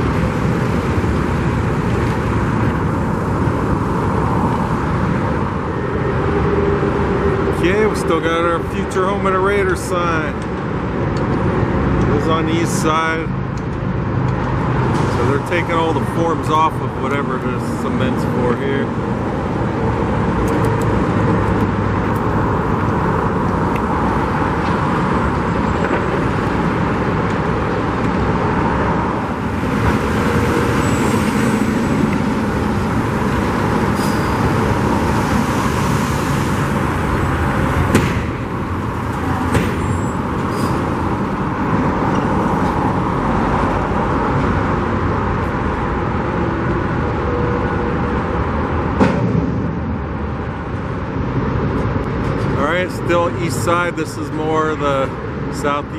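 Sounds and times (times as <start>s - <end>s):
road traffic with vehicles passing: 0.0s - 55.9s
sharp knocks: 37.8s - 38.5s.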